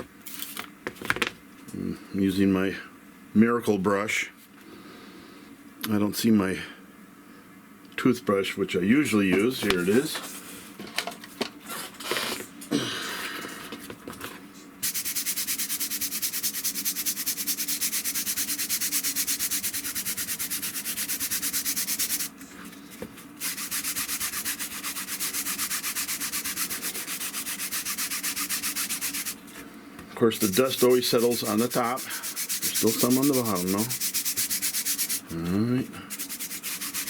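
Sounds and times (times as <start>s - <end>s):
brush scrubbing fabric: 14.8s - 22.4s, 23.4s - 29.6s, 30.3s - 35.5s, 36.1s - 37.0s.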